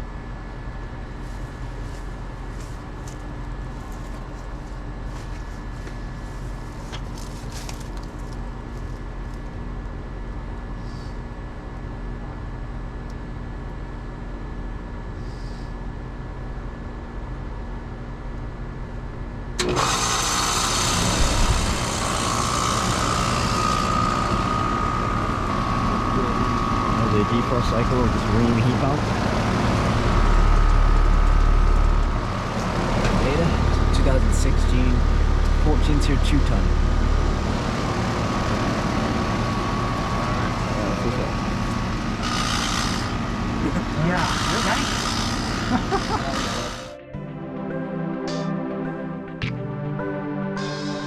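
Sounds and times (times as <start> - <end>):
heat pump humming: 0.0 - 47.0.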